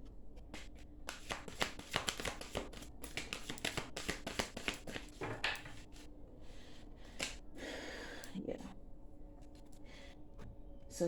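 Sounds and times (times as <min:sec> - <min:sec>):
cards being shuffled: 0:00.4 - 0:06.1, 0:07.1 - 0:07.4.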